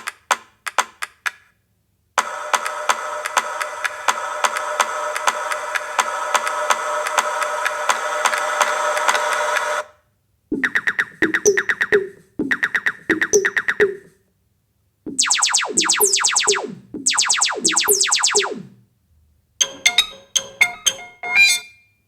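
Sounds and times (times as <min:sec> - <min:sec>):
electronic pulses with falling sweeps: 0:15.1 - 0:18.8
short sharp synth stabs: 0:15.1 - 0:18.8.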